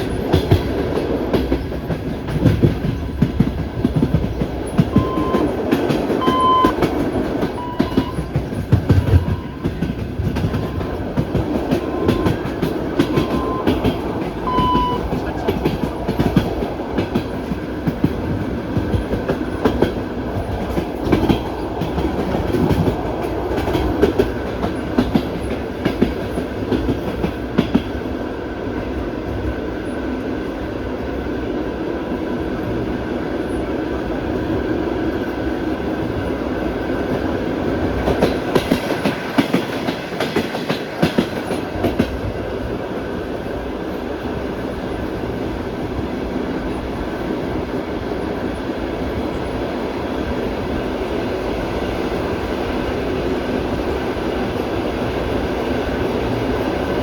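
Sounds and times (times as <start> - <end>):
train wheels clattering over rail joints: 0.0 - 28.0, 37.0 - 42.5.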